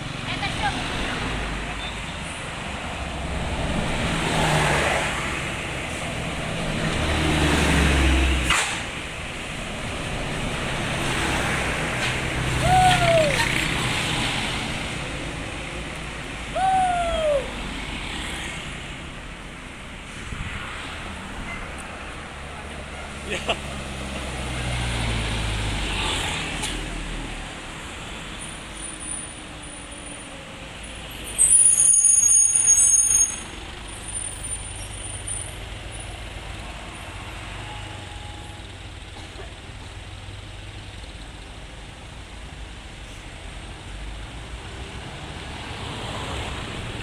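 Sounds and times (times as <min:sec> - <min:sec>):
heavy vehicle engine rumble: 0:05.1 - 0:25.5.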